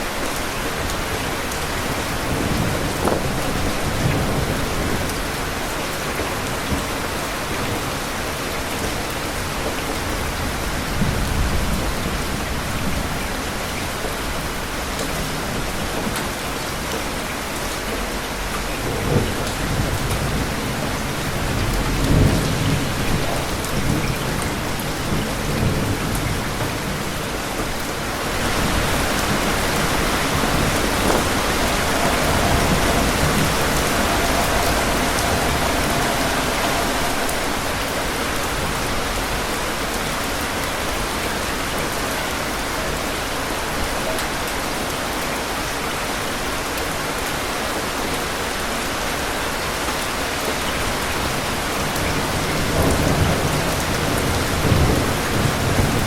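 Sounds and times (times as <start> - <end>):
heavy rain: 0.0 - 56.0
rolling thunder: 0.2 - 43.0, 50.6 - 56.0.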